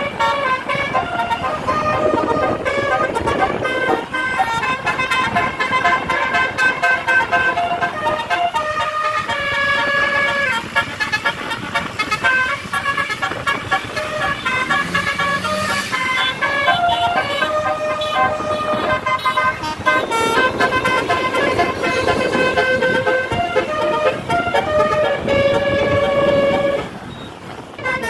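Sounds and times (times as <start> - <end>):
multi-tone air horn melody: 0.0 - 28.0
vehicle and road noise: 0.0 - 28.0.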